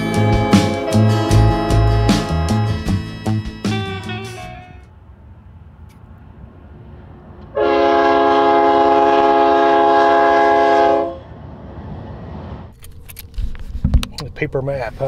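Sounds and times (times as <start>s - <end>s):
horn blast chord: 0.0s - 4.9s, 7.5s - 11.2s.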